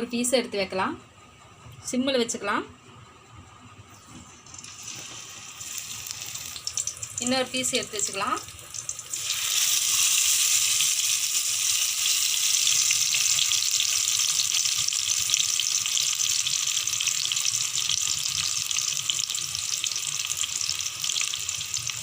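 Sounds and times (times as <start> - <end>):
chicken sizzling in hot oil: 4.4 - 22.0.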